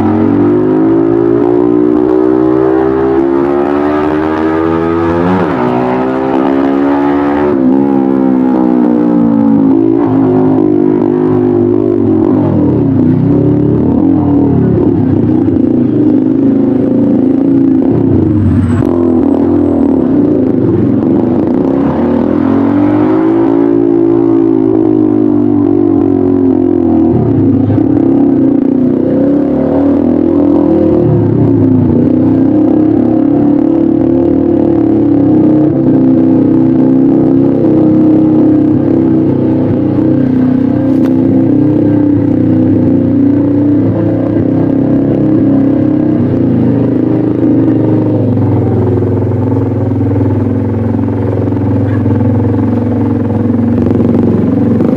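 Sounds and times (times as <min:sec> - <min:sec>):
motorcycle engine revving: 0:00.0 - 0:54.9
motorcycle engine idling: 0:46.3 - 0:54.9.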